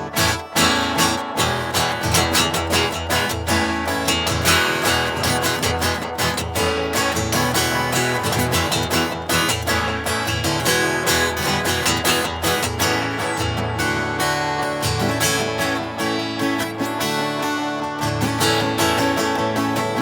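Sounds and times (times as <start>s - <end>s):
acoustic guitar strumming chords: 0.0s - 20.0s.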